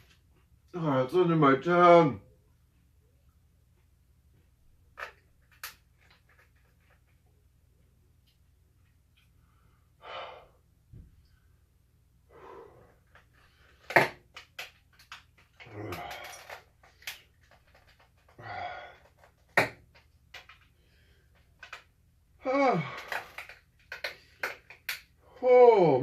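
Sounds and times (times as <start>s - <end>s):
man wheezing breaths: 10.0s - 10.6s, 18.3s - 19.3s.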